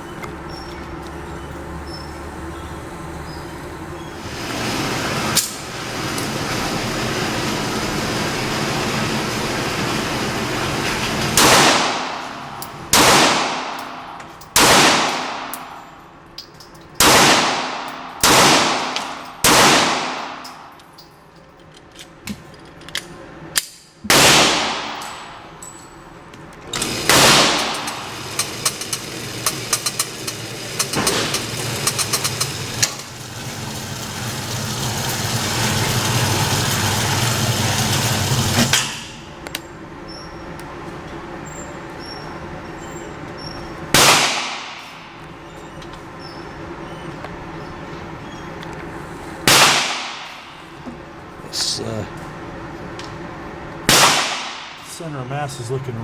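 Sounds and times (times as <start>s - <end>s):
pistol shots: 11.4s - 15.8s, 17.0s - 20.6s, 24.1s - 25.4s, 27.0s - 28.6s, 30.9s - 31.5s, 43.9s - 45.2s, 49.4s - 50.6s, 53.9s - 54.9s.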